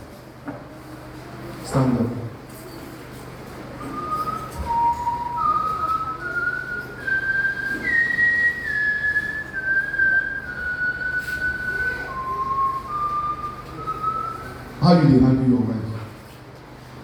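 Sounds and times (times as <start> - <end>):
whistle-like melody: 3.8 - 14.8.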